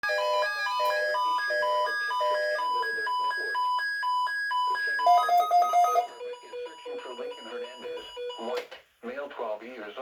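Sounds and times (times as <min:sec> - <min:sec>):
alternating high and low alarm beeps: 0:00.0 - 0:08.5
lower radio beeps: 0:01.2 - 0:08.6.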